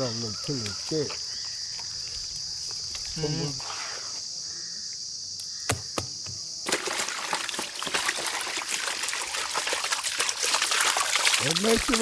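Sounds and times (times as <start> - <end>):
crickets chirping: 0.0 - 12.0
water trickling and splashing: 6.6 - 12.0.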